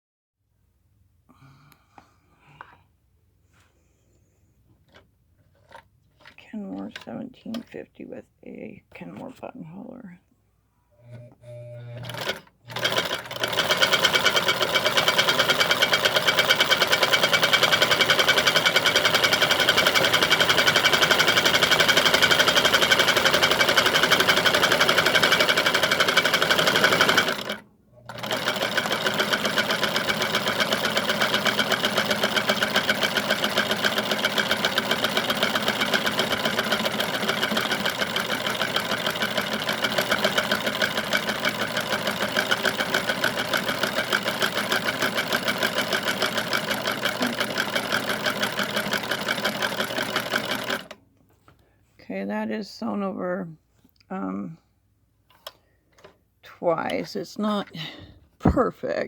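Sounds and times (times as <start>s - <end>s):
sewing machine stitching: 4.9s - 7.6s, 11.0s - 51.0s.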